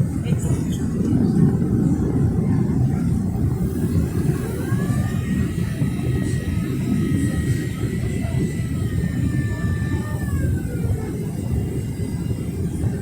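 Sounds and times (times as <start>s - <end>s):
jet engine and airflow roar: 0.0s - 13.0s
thin high whine: 2.8s - 13.0s.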